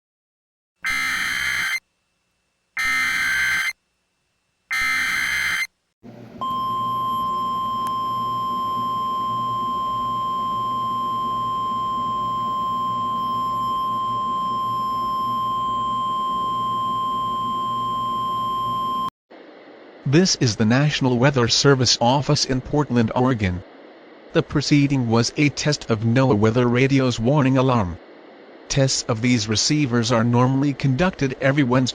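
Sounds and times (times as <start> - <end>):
buzzing digital data bursts: 0.8 - 1.8, 2.8 - 3.8, 4.7 - 5.7
steady warning alarm tone: 0.8 - 1.8, 2.8 - 3.8, 4.7 - 5.7, 6.4 - 19.1.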